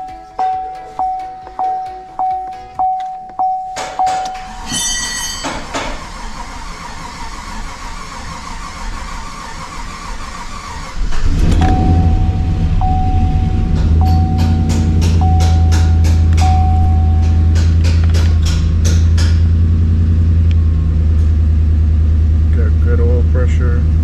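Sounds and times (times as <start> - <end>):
background music: 0.0 - 4.9, 11.7 - 18.0
engine cranking on starter: 5.4 - 18.8
engine idling: 5.4 - 24.0.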